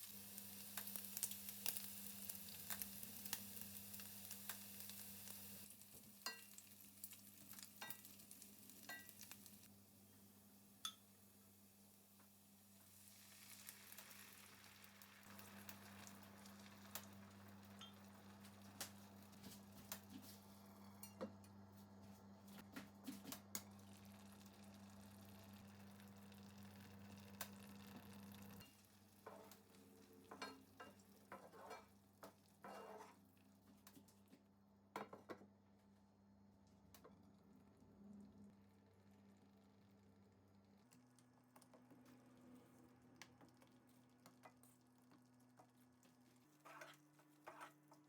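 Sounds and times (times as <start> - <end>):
meat sizzling in a frying pan: 0.0 - 19.1
utensil scraping a pan: 31.3 - 31.9, 32.6 - 33.2, 46.5 - 48.0.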